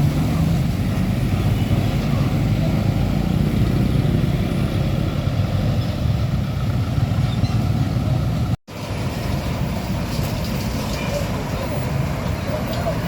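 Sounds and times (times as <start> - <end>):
roadside traffic noise: 0.0 - 13.0
truck diesel engine running: 0.0 - 13.0.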